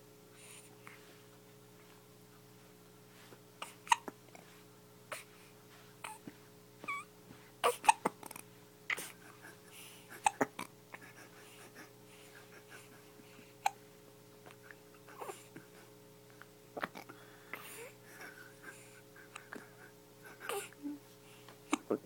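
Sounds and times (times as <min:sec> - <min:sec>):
baby hiccupping: 0:03.6 - 0:04.2, 0:06.8 - 0:09.1, 0:10.2 - 0:10.7.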